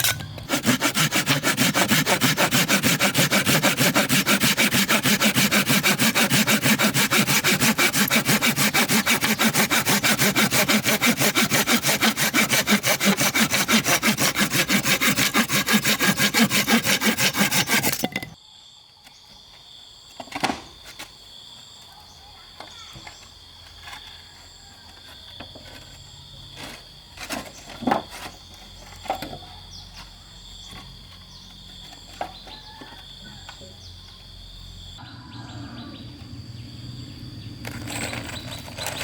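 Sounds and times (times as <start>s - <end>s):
hand saw cutting wood: 0.0s - 18.3s, 37.6s - 39.0s
insects chirring faintly: 18.4s - 39.0s.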